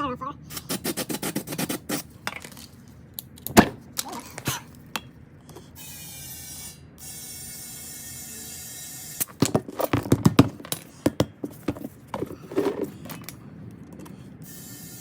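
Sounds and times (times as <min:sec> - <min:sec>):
sharp knocks and clatter: 0:09.3 - 0:13.4.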